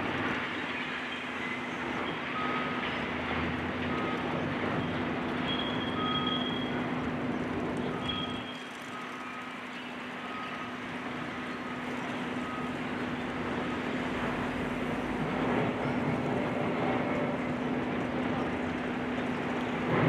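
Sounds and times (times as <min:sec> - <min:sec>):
diesel excavator engine running: 0:00.0 - 0:20.0.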